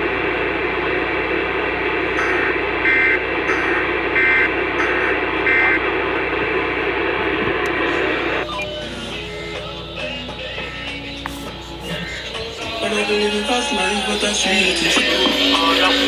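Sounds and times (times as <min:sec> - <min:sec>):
radio static hiss: 0:03.8 - 0:16.0.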